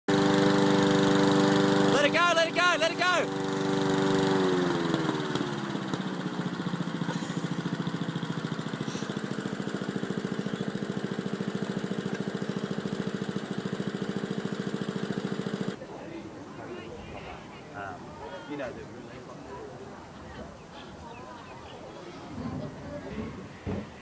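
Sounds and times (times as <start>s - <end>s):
lawn mower engine idling: 0.1s - 16.9s.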